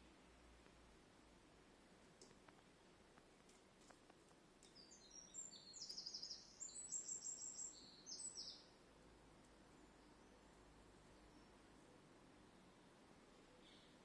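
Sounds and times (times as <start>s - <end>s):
faint clicks: 2.0s - 4.9s
small bird chirping and trilling: 4.6s - 8.7s.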